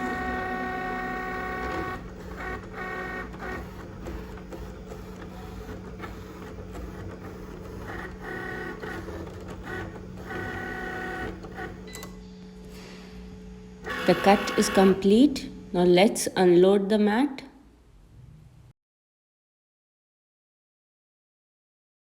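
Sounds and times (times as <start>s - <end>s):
cutting machine motors whining: 0.0s - 12.1s, 13.7s - 15.2s
steady low hum: 0.0s - 18.7s.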